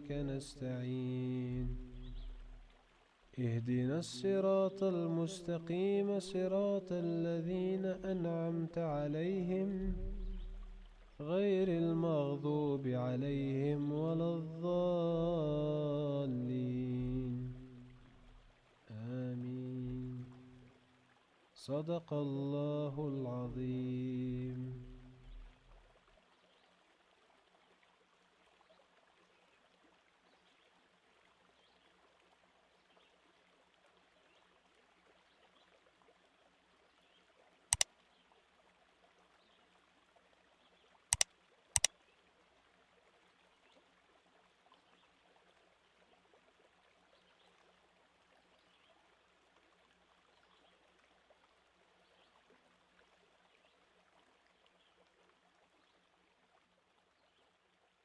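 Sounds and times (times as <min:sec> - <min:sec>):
flowing stream: 0:00.0 - 0:58.0
sharp clicks: 0:41.1 - 0:41.9.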